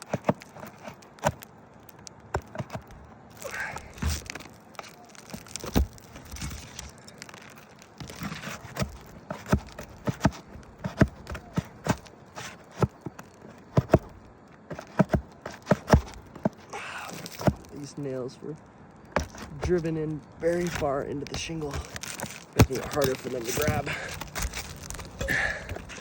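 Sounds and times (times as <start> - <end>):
shingle crackling and rustling: 0.0 - 26.0.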